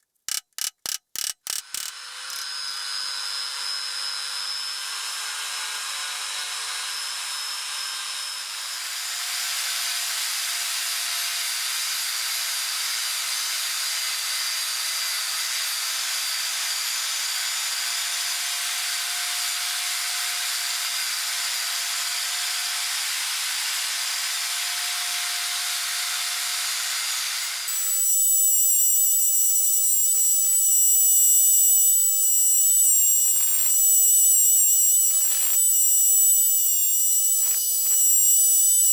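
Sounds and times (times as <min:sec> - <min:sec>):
high-pitched tool whine: 0:01.6 - 0:08.8, 0:27.3 - 0:38.9
electric power tool humming: 0:27.3 - 0:38.9.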